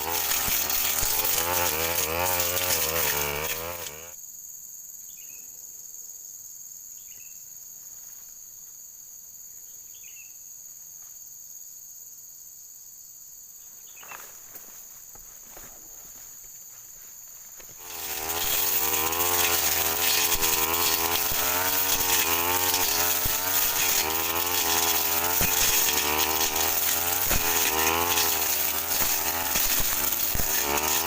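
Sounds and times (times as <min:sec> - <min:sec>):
brush cutter engine running: 0:00.0 - 0:04.2, 0:17.6 - 0:31.0
insects droning: 0:00.0 - 0:31.0.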